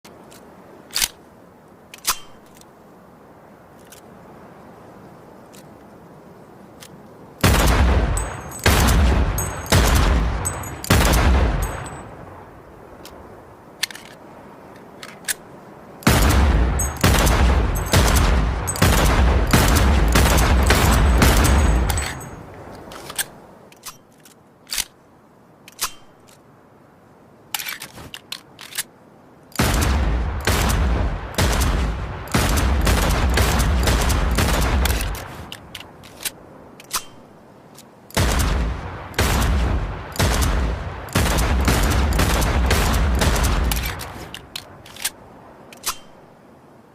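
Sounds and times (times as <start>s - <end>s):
automatic gunfire: 7.4s - 12.0s, 16.1s - 22.3s, 39.2s - 44.0s.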